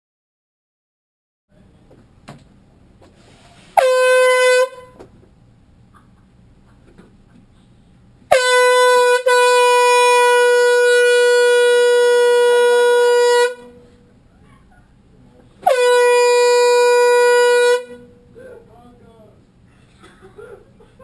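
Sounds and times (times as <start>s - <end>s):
air horn blasting: 3.7s - 5.1s, 8.3s - 14.0s, 15.6s - 18.3s.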